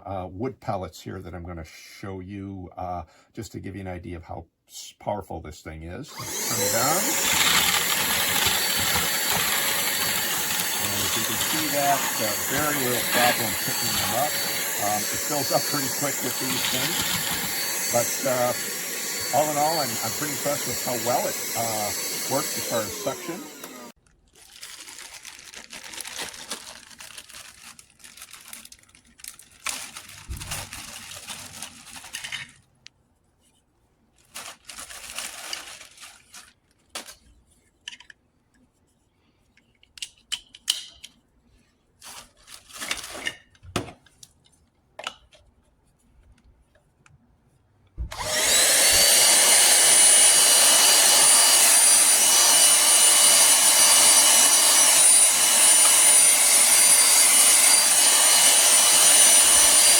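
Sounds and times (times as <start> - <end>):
handheld vacuum cleaner whine: 6.1 - 24.0, 48.0 - 59.9.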